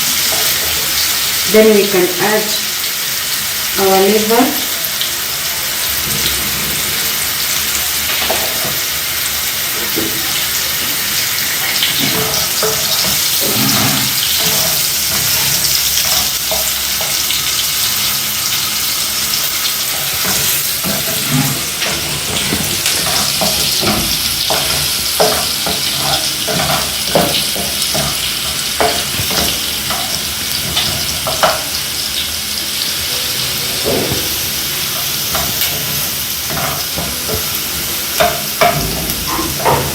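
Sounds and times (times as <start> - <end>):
onions sizzling in oil: 0.0 - 39.9
spoon knocking against pan: 20.4 - 31.8, 38.2 - 39.9.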